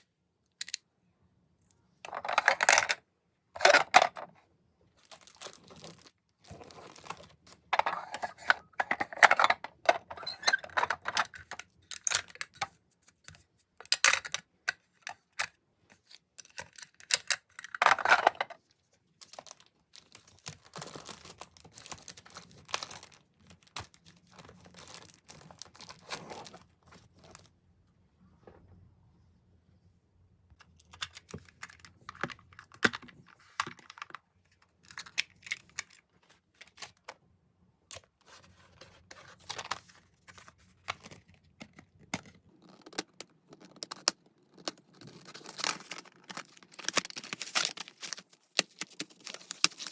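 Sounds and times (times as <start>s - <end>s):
packaging tearing and crinkling: 19.4s - 26.6s, 45.0s - 49.9s.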